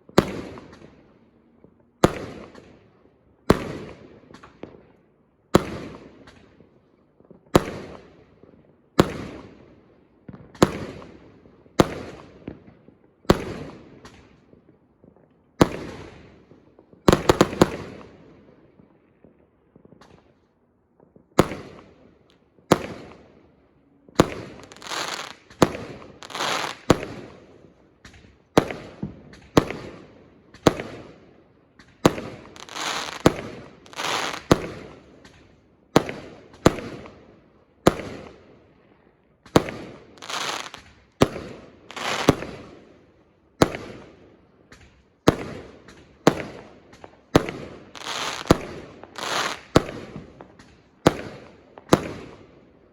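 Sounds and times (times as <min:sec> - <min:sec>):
firework bangs: 0:24.1 - 0:27.4, 0:31.8 - 0:35.4, 0:39.5 - 0:42.7, 0:45.3 - 0:52.3
firework crackle: 0:24.4 - 0:27.3, 0:32.0 - 0:34.9, 0:40.1 - 0:40.9, 0:41.9 - 0:42.6, 0:47.4 - 0:50.0.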